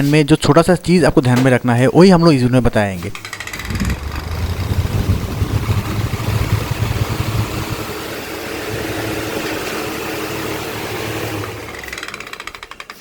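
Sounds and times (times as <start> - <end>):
electric fan humming: 3.0 - 13.0
rapid knocking of fan blade: 3.2 - 13.0.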